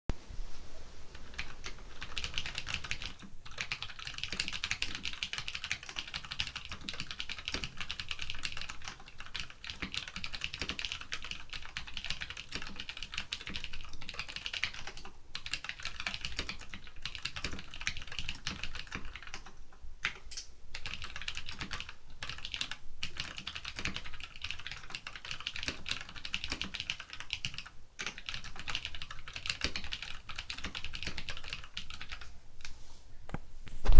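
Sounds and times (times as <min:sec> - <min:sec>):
mechanical keyboard typing: 0:01.2 - 0:32.2.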